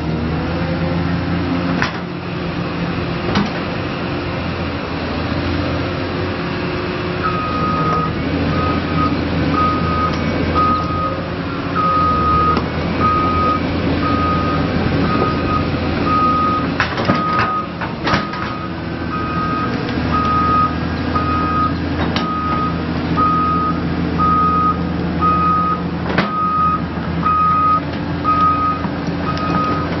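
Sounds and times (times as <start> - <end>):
diesel engine running: 0.0 - 30.0
travel alarm beeping: 7.2 - 11.2, 11.8 - 17.7, 18.5 - 29.9.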